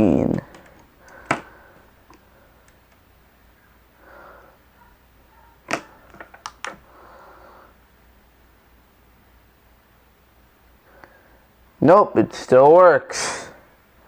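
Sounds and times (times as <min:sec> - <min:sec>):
sharp clicks: 0:00.3 - 0:01.4, 0:05.7 - 0:06.8
clicks and taps of small parts: 0:05.7 - 0:06.8.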